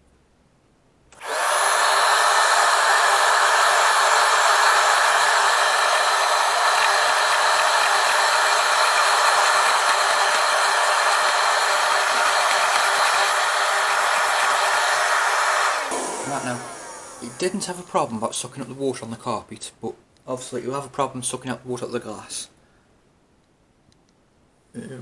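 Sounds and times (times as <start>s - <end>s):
hand vacuum cleaner running: 1.2s - 18.1s.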